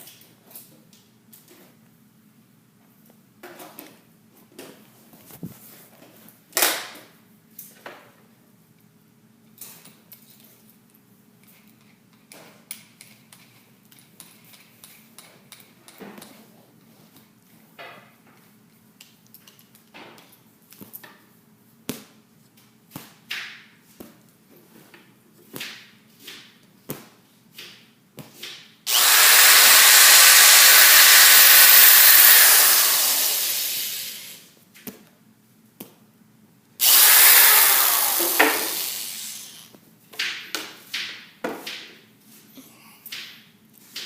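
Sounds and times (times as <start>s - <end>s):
power drill boring into wood: 28.9s - 34.4s, 36.8s - 39.7s.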